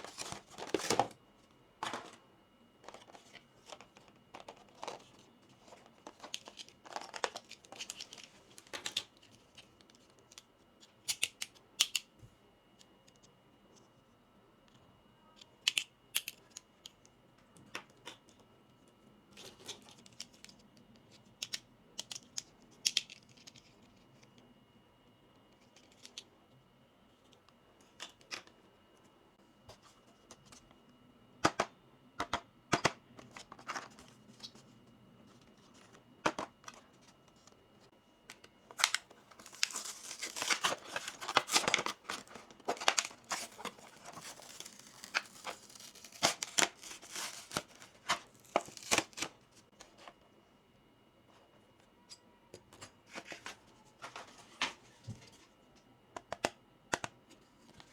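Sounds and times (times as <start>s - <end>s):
plastic packaging tearing and crinkling: 38.8s - 49.3s.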